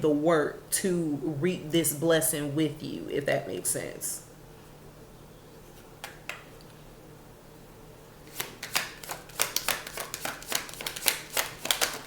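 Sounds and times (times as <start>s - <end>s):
cards shuffling: 8.3s - 12.0s.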